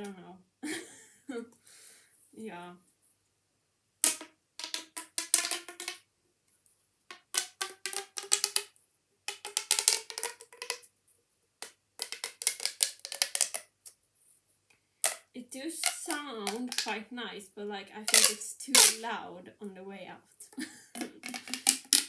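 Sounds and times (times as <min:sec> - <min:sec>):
pop tube clicking pops: 0:04.0 - 0:06.0, 0:07.1 - 0:08.7, 0:09.3 - 0:10.8, 0:11.6 - 0:13.7, 0:15.0 - 0:17.0, 0:18.1 - 0:19.0, 0:21.0 - 0:22.0.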